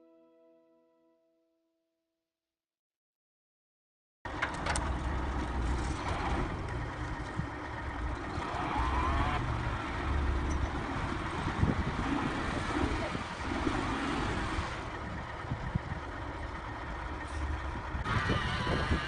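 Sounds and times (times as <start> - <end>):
vehicle engine rumbling: 4.3 - 19.0.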